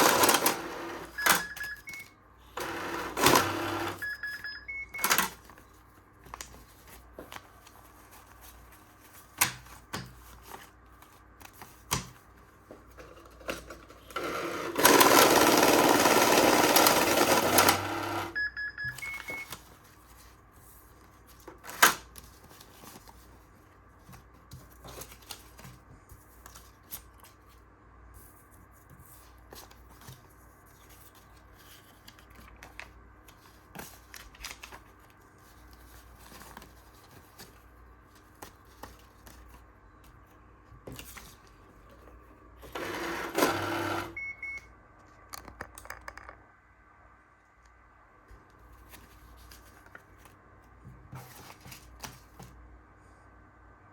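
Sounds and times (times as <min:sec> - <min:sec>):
money-counting machine rushing: 0:00.0 - 0:01.4, 0:02.6 - 0:04.0, 0:14.2 - 0:18.4, 0:42.7 - 0:44.2.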